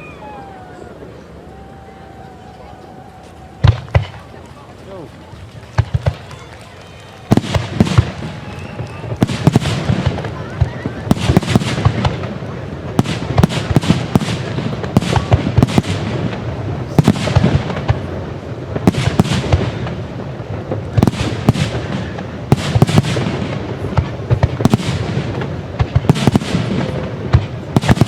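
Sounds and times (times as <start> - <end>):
fireworks crackling: 0.0 - 28.0
firework shell bursts and booms: 20.6 - 28.0.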